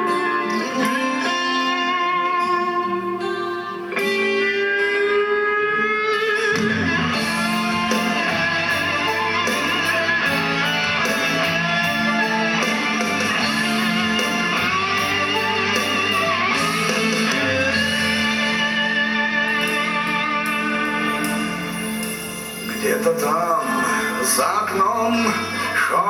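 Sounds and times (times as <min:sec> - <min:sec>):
guitar lead: 0:00.0 - 0:26.0
bass and steady beat: 0:06.6 - 0:22.4.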